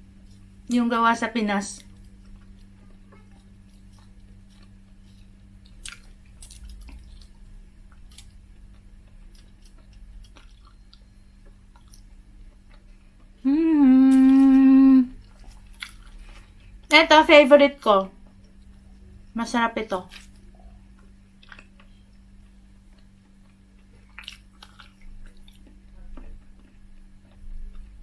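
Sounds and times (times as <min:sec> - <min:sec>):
person chewing food: 0:01.8 - 0:16.9, 0:20.1 - 0:28.0
wet mouth smacks and clicks: 0:05.8 - 0:07.3, 0:24.1 - 0:25.7
person humming mmm: 0:13.4 - 0:15.2.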